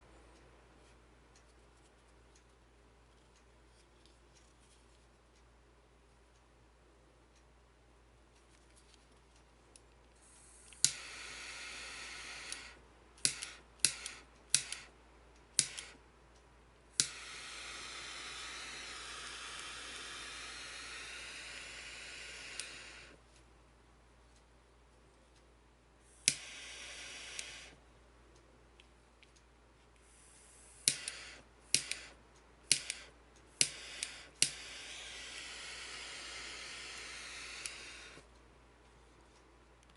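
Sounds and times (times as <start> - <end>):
gas jet hissing: 10.2 - 14.9, 17.0 - 23.2, 26.0 - 27.8, 30.0 - 38.3
lighter ignition clicks: 10.3 - 14.9, 15.6 - 16.0, 17.0 - 23.2, 26.2 - 27.8, 30.0 - 38.3.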